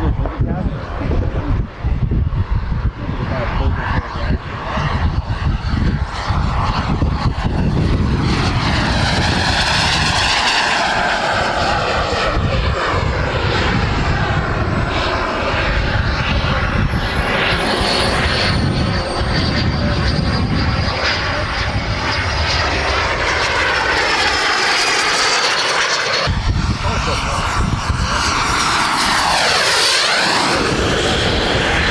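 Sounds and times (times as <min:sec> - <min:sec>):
model jet turbine flying past: 0:00.0 - 0:31.9.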